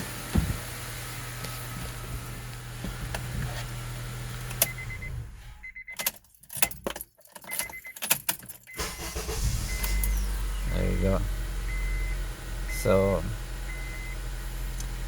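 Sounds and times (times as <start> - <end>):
ignition key clicking and jangling: 5.8 - 10.3
engine starting: 8.7 - 10.6
car engine idling: 8.8 - 15.0.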